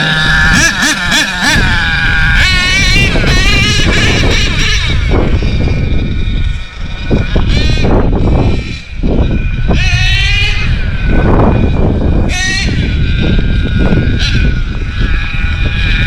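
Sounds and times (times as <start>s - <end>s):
heavy low rumble: 0.0s - 16.0s
model truck engine revving: 0.0s - 16.0s.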